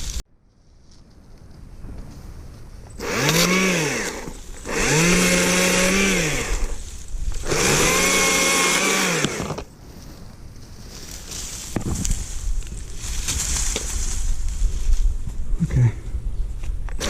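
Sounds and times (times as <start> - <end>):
battery chainsaw whirring: 3.0 - 9.7.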